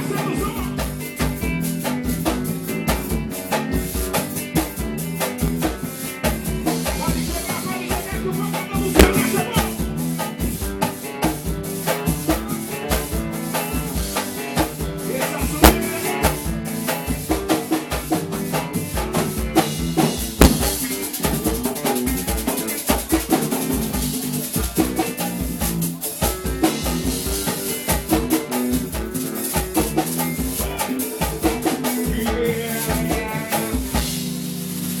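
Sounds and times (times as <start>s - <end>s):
hand percussion: 0.0s - 34.3s
drum kit: 0.0s - 35.0s
bass notes: 8.2s - 10.0s, 20.2s - 21.1s.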